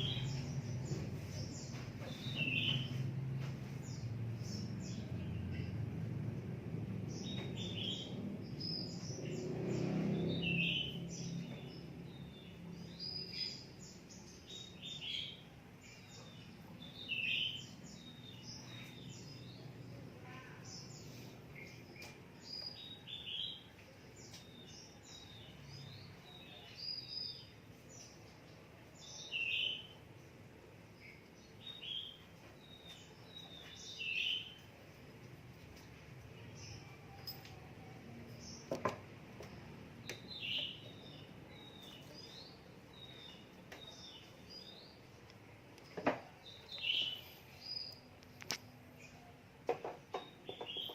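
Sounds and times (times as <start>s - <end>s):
low background rumble: 0.0s - 13.0s.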